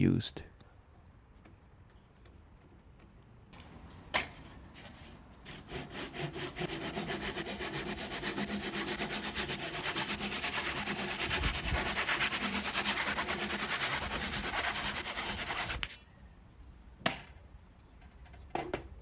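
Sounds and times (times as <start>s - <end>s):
pull saw cutting wood: 5.4s - 16.0s.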